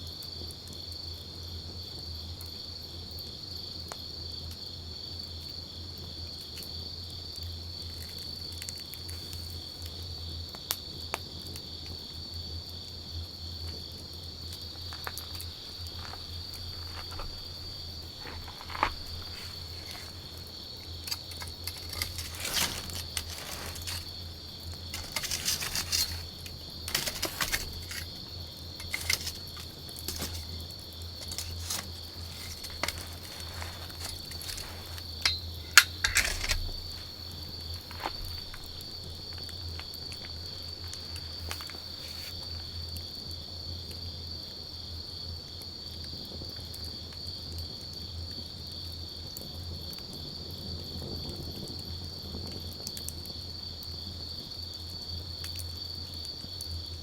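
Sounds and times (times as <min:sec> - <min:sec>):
wood campfire crackling: 0:13.6 - 0:42.9
insect chirring: 0:14.4 - 0:42.9.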